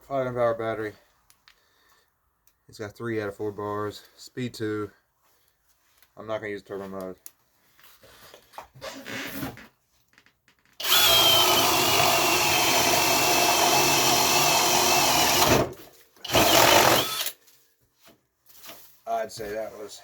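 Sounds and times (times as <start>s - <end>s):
cordless drill boring a hole: 10.8s - 17.4s.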